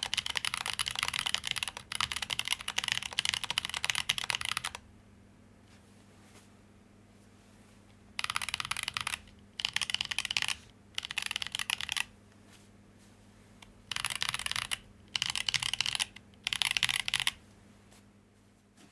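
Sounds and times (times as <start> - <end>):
mechanical keyboard typing: 0.0 - 4.8, 8.2 - 12.1, 13.9 - 17.4.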